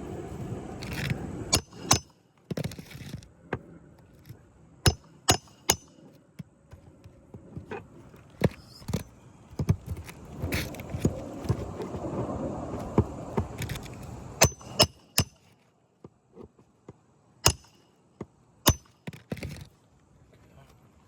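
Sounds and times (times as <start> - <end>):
rough scraping rustle: 0.0 - 4.6, 5.9 - 16.7.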